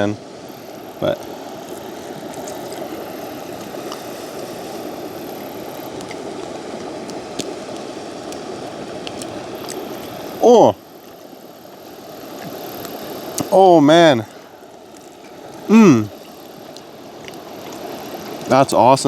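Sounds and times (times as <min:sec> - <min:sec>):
man humming mmm: 0:10.4 - 0:10.8, 0:15.7 - 0:16.2.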